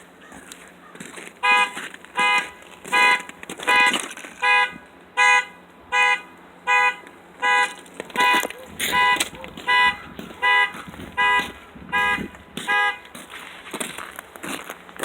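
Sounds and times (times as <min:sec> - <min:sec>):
car alarm horn beeping: 0:01.4 - 0:13.3.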